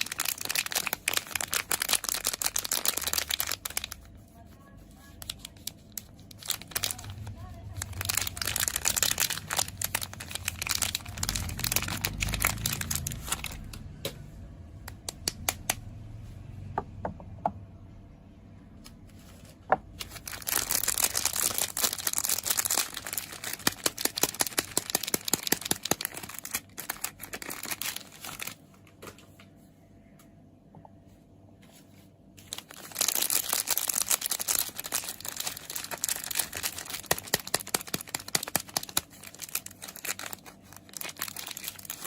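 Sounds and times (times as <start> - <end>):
wrapper crinkling and tearing: 0.0 - 13.8, 20.0 - 28.6, 32.4 - 42.0.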